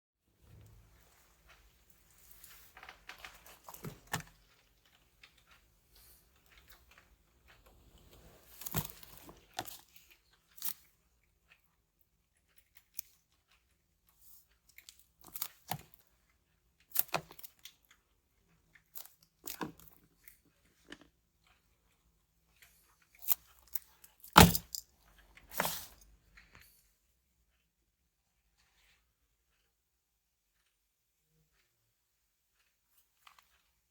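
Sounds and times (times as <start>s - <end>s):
packaging rustling and scraping: 25.4s - 26.0s.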